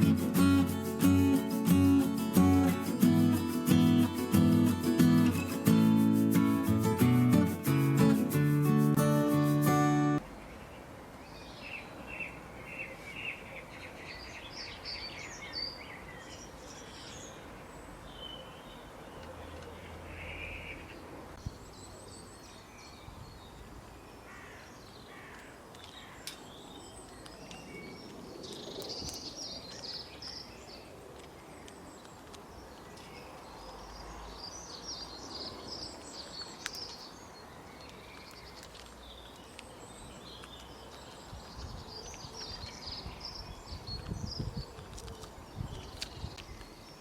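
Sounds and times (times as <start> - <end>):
small birds chirping: 0.0 - 10.2, 24.8 - 47.0
outdoor background noise: 0.0 - 47.0.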